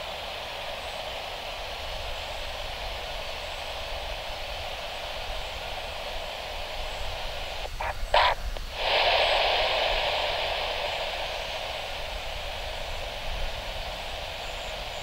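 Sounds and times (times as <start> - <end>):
radio static hiss: 0.0 - 15.0
radio static crackling: 4.1 - 15.0.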